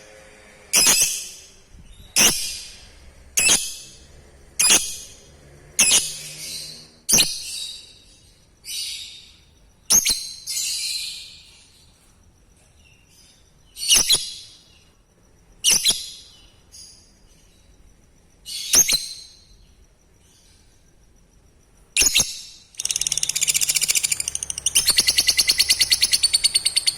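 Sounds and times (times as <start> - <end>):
lovebird shrill rasping calls: 0.8 - 1.4, 2.2 - 2.8, 3.4 - 3.9, 4.6 - 5.2, 5.8 - 7.4, 22.0 - 26.9.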